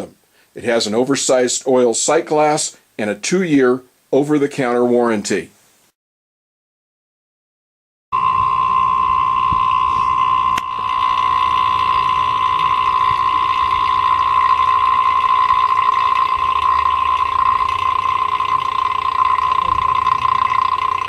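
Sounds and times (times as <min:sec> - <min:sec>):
vacuum pump whining: 0:08.2 - 0:21.0.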